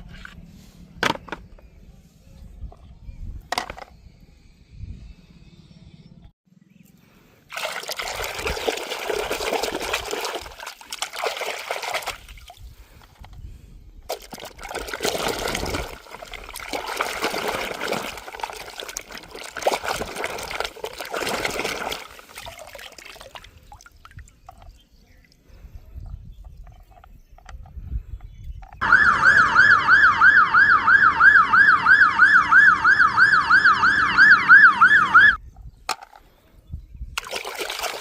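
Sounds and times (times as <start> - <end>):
water running and splashing: 7.5 - 12.6, 14.1 - 24.6, 37.2 - 38.0.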